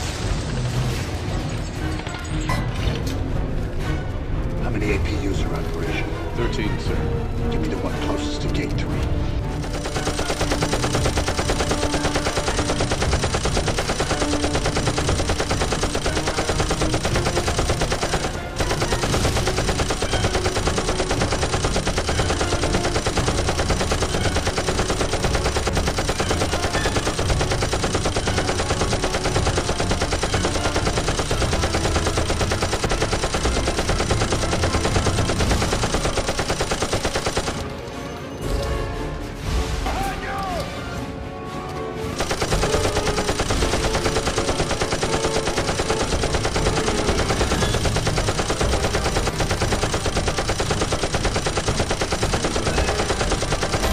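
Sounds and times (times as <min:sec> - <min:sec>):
rapid automatic gunfire: 0:09.5 - 0:37.7, 0:42.1 - 0:53.9.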